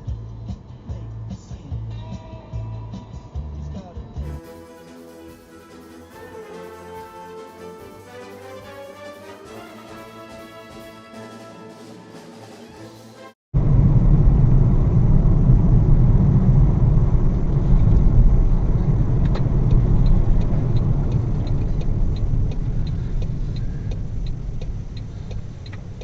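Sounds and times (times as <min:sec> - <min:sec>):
engine and road rumble: 0:00.0 - 0:04.4, 0:13.6 - 0:26.0
turn signal ticking: 0:19.1 - 0:26.0.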